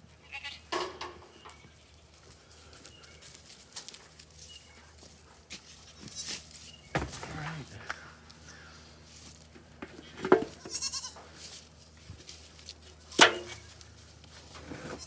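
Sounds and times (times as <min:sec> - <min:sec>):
goats bleating: 0:00.1 - 0:00.7, 0:05.8 - 0:06.4, 0:10.4 - 0:11.4.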